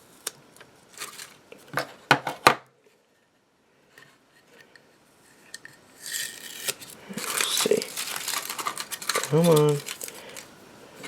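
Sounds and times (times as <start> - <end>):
faint handling sounds: 6.7 - 11.0.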